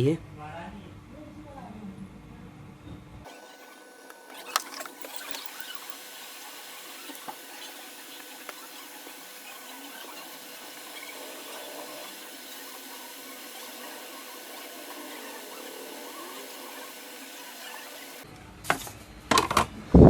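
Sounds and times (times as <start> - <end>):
hot air blower hissing: 3.3 - 18.2.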